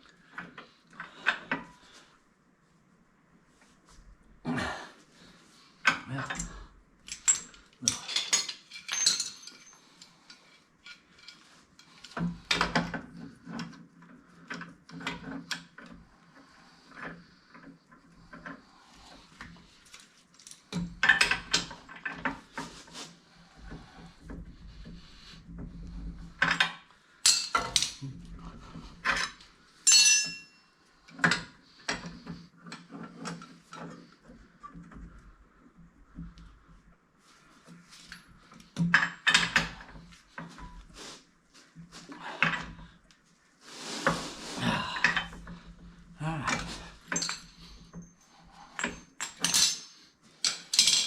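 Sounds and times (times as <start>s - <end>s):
metal tools clinking: 6.2s - 12.2s, 27.2s - 28.0s, 29.1s - 30.7s, 46.4s - 51.0s.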